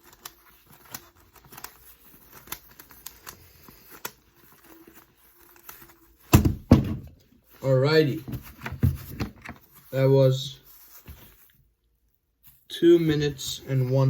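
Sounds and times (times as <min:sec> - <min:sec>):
puzzle cube clicking and rattling: 0:00.0 - 0:06.3
loud thump: 0:06.4 - 0:07.1.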